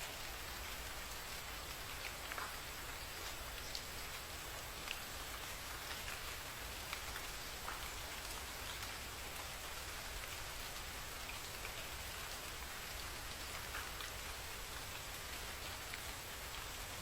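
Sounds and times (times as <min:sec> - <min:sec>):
steady rain falling: 0:00.0 - 0:17.0.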